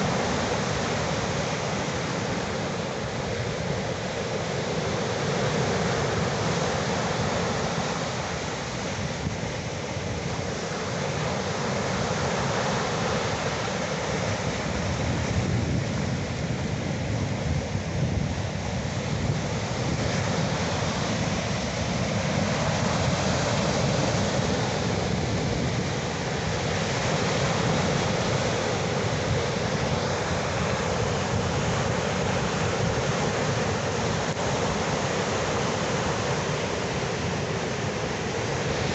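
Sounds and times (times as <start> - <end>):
ocean waves washing in: 0.0 - 38.9.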